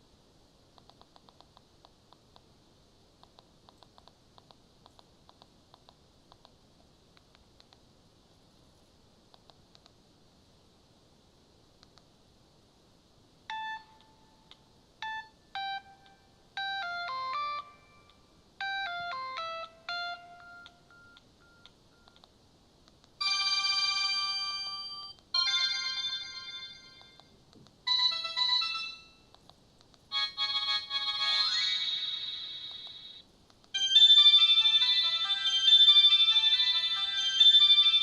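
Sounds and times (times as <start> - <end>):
phone ringtone beeping tune: 13.5 - 14.4, 15.0 - 22.2, 23.2 - 27.2, 27.9 - 29.3, 30.1 - 33.2, 33.8 - 38.0
polyphonic phone ringtone: 15.0 - 22.0, 23.2 - 27.2, 27.9 - 29.3, 30.1 - 33.2, 33.8 - 38.0.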